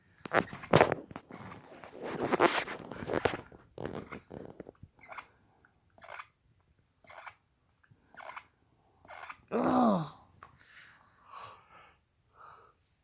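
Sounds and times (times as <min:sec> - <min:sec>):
teeth grinding: 0:06.0 - 0:06.4, 0:07.0 - 0:07.4, 0:08.1 - 0:09.4.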